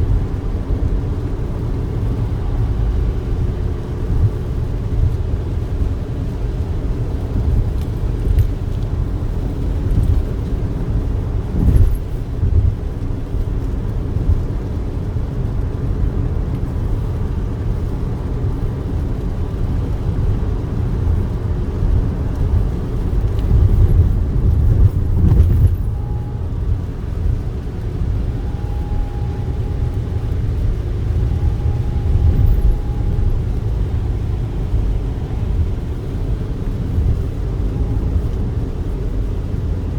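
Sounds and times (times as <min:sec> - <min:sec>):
moving vehicle rumble: 0:00.0 - 0:39.9
faint high tone: 0:28.4 - 0:34.3.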